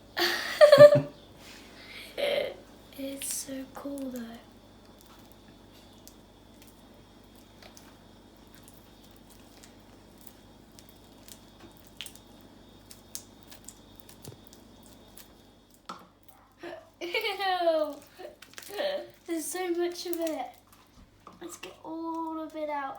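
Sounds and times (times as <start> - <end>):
low steady hum: 0.0 - 22.9
slime squishing and clicking: 8.5 - 15.3, 19.9 - 20.9.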